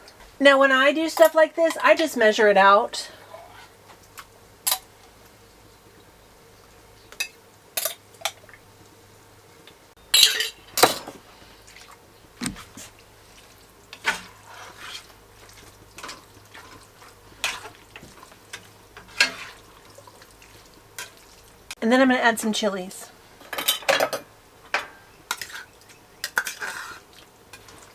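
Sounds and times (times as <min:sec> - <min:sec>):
dishes and utensils clinking: 0:07.2 - 0:08.0, 0:10.1 - 0:11.2, 0:23.4 - 0:27.0
dishes clattering: 0:10.2 - 0:11.2, 0:23.4 - 0:26.9.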